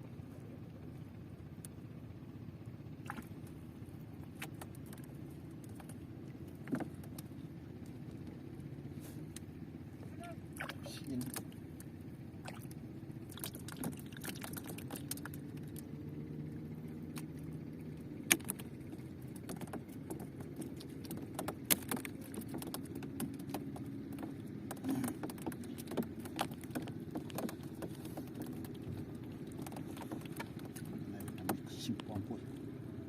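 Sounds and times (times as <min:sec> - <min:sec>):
boat engine droning: 0:00.0 - 0:33.0
sharp clicks and knocks: 0:18.2 - 0:32.1.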